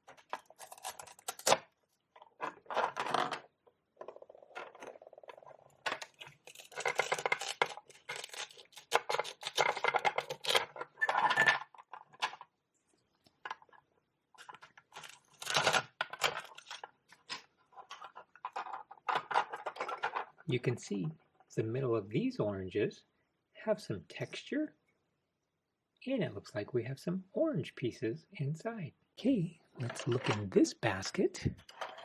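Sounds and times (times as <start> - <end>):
toy pieces knocking: 5.8 - 10.8.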